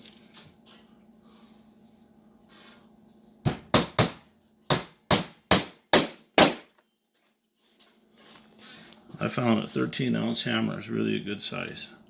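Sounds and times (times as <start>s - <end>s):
hammer driving nails into wood: 3.5s - 6.7s.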